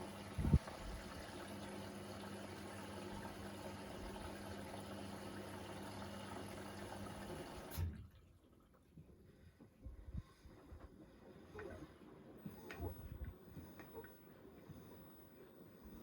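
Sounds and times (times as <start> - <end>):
washing machine taking in water: 0.0 - 9.3.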